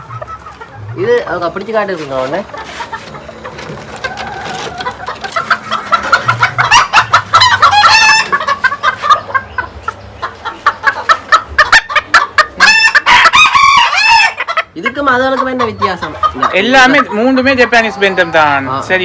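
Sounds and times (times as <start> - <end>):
chickens clucking: 0.0 - 19.0
rooster crowing: 3.6 - 8.4, 12.6 - 14.4.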